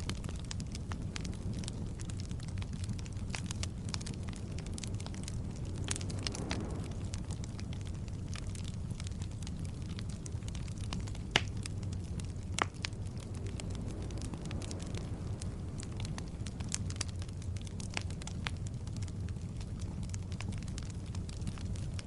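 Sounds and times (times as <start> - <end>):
fire crackling and popping: 0.0 - 22.0
low rumble of flame: 0.0 - 22.0.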